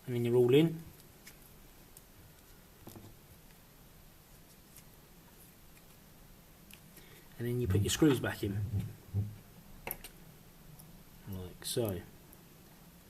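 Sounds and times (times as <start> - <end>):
soft clicks of small parts: 0.9 - 3.6, 6.6 - 7.0, 9.8 - 11.0, 11.8 - 12.4.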